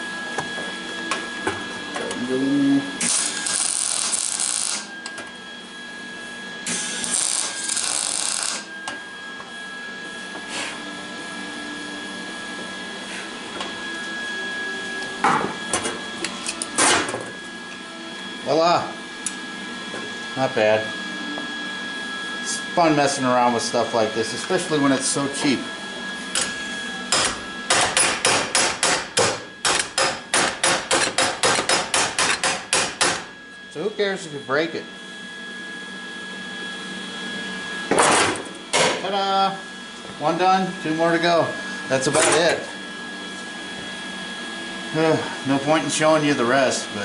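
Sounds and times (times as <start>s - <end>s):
high even whine: 0.0s - 28.0s, 32.7s - 47.0s
hammer striking metal: 27.1s - 33.3s.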